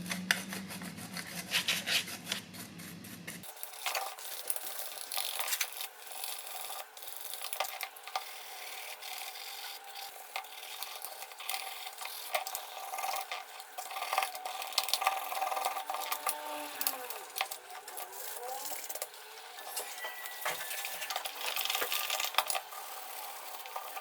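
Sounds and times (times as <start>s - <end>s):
abrasive scraping small part: 0.2s - 24.0s.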